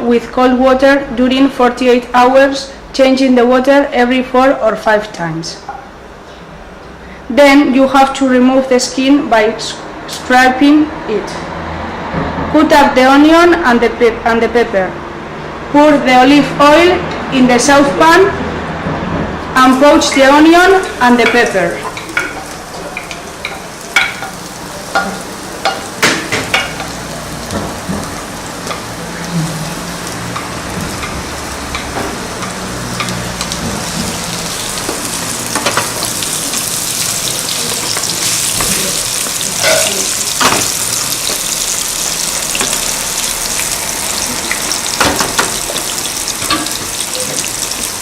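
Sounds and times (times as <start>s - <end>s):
vegetables sizzling in oil: 19.6s - 48.0s.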